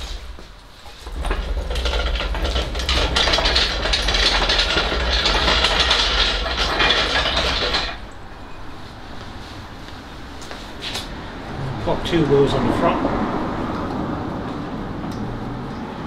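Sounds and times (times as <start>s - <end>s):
machine droning and rattling: 0.0s - 9.3s.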